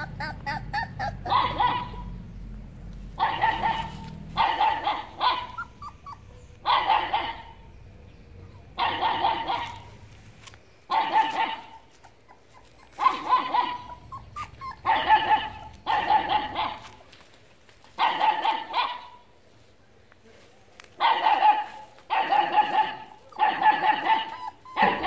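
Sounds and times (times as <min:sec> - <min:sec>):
dog barking: 0:00.0 - 0:02.1, 0:03.2 - 0:07.7, 0:08.5 - 0:10.0, 0:10.9 - 0:11.8, 0:12.9 - 0:17.0, 0:18.0 - 0:19.2, 0:21.0 - 0:25.0.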